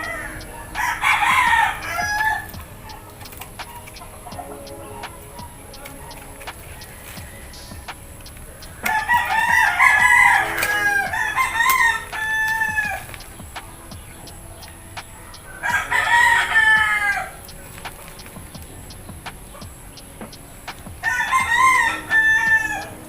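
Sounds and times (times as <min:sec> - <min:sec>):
rooster crowing: 0:00.0 - 0:03.2, 0:04.1 - 0:07.9, 0:08.7 - 0:13.2, 0:14.5 - 0:17.4, 0:21.0 - 0:23.0.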